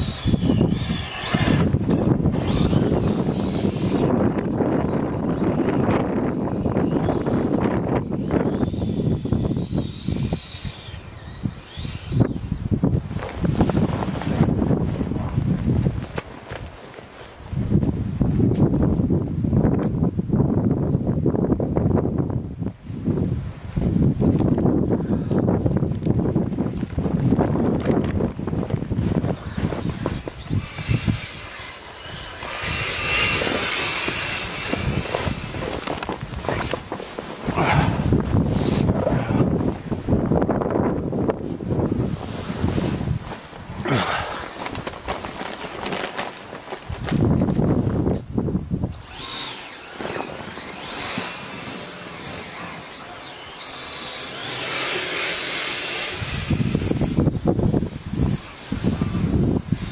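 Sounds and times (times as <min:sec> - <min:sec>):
electric motor whine: 0:00.0 - 0:15.5, 0:27.7 - 0:40.5, 0:48.9 - 0:59.9
wind buffeting microphone: 0:00.0 - 0:16.8, 0:17.4 - 0:54.8, 0:55.8 - 0:59.9.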